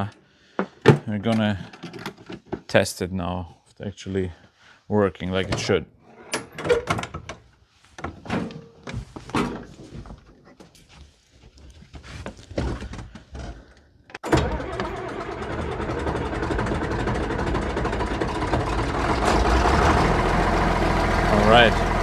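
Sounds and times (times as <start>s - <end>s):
diesel tractor engine running: 14.2s - 22.0s.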